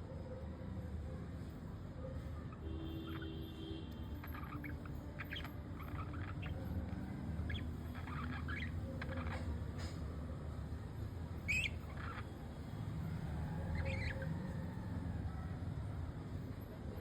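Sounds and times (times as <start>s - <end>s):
budgerigar chirps: 4.2s - 10.0s, 11.4s - 12.3s, 13.5s - 14.7s
budgerigars chattering: 4.3s - 10.0s, 11.4s - 12.3s, 13.6s - 14.6s.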